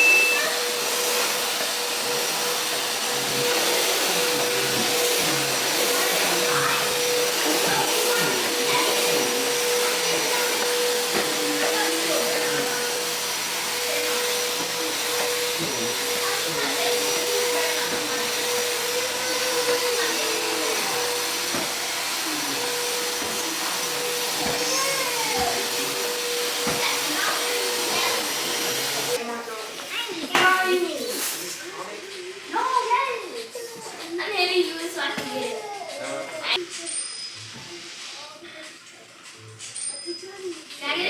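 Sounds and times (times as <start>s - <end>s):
electric motor whine: 0.0s - 29.2s
faint voices: 0.0s - 37.0s.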